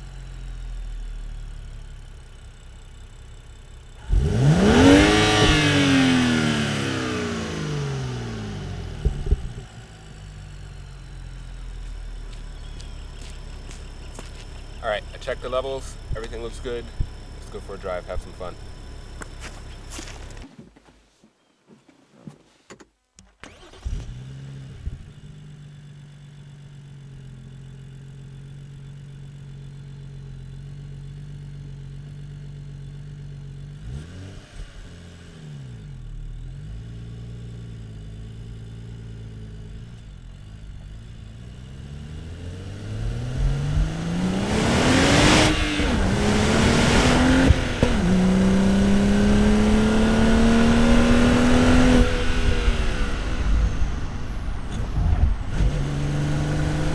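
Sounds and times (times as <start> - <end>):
car engine starting and idling: 0.0 - 20.5, 23.2 - 56.9
engine revving and accelerating: 4.0 - 20.5, 33.7 - 56.9.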